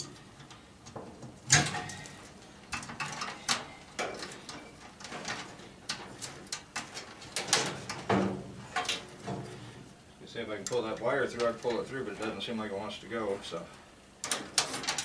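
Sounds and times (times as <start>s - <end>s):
knocks and clicks of metal parts: 0.0s - 2.1s.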